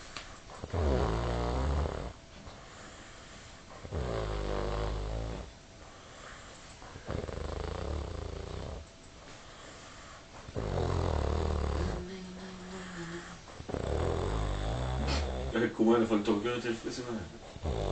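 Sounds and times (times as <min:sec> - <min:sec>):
man snoring: 0:00.6 - 0:02.2, 0:03.8 - 0:05.5, 0:07.0 - 0:08.8, 0:10.6 - 0:12.1, 0:13.7 - 0:15.8, 0:17.3 - 0:17.9.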